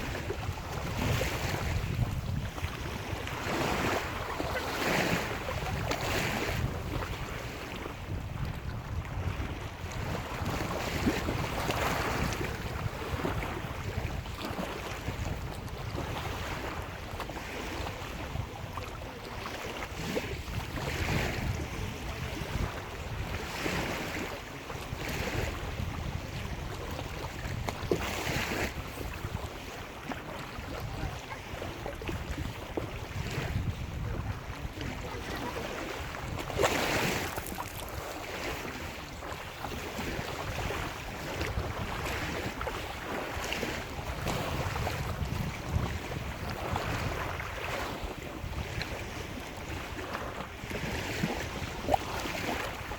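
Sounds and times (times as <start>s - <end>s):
lake waves washing onto shore: 0.0s - 52.9s
wind rumble on microphone: 0.0s - 52.9s.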